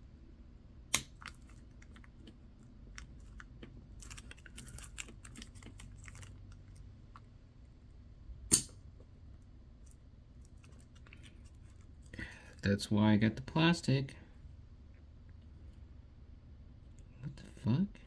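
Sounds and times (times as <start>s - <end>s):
plastic crinkling: 3.0s - 6.9s
sharp snap: 8.5s - 8.8s.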